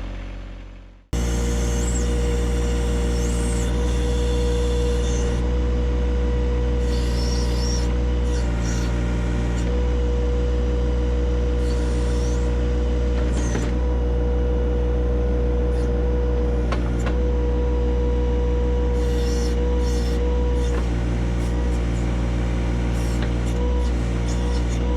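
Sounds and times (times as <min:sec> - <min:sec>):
tractor diesel engine running: 0:00.0 - 0:19.0.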